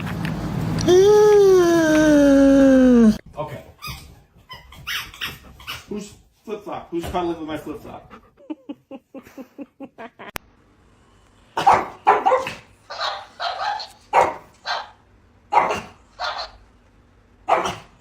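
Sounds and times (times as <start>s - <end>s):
dog barking: 11.6s - 16.6s, 17.4s - 18.0s.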